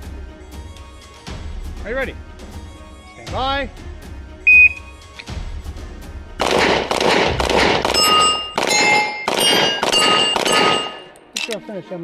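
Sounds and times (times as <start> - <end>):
rapid pistol shots: 6.4 - 11.1
steel targets ringing: 7.8 - 11.3.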